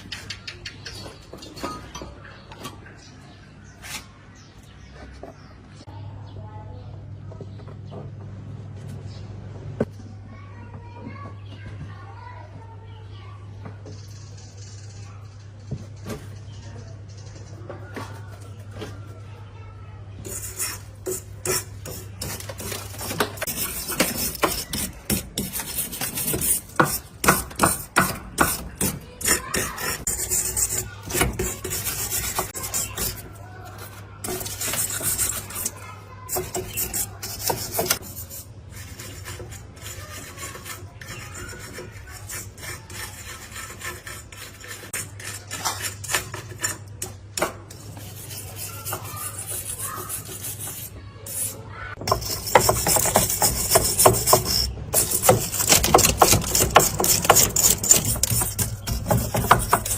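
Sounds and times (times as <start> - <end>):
filing rasping strokes: 20.3 - 59.9.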